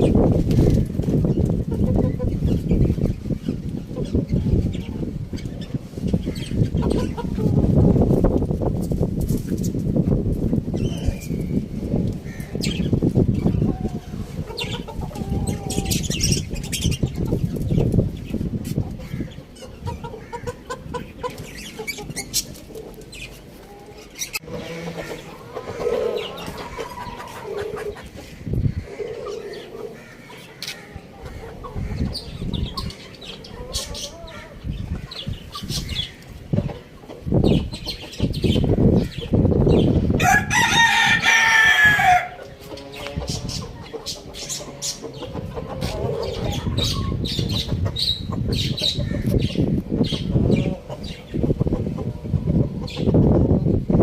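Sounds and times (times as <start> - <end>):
chickens clucking: 0.0 - 54.0
rooster crowing: 40.2 - 42.4.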